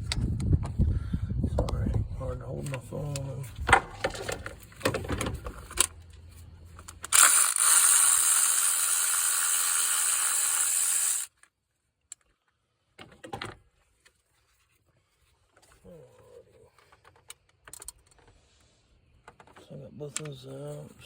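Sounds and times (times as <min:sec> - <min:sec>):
socket ratchet clicking: 0:06.9 - 0:11.3.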